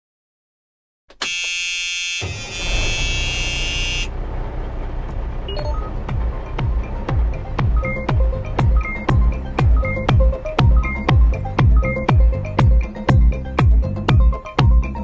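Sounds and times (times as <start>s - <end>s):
buzzy synthesizer tone: 1.5s - 4.2s.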